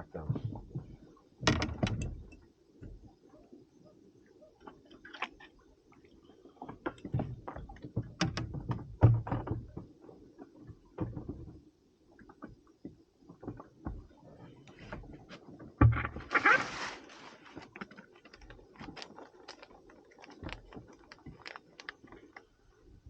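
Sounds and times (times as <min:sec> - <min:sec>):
fishing tackle clicks and knocks: 0:01.4 - 0:02.4, 0:06.6 - 0:09.9, 0:17.6 - 0:22.5.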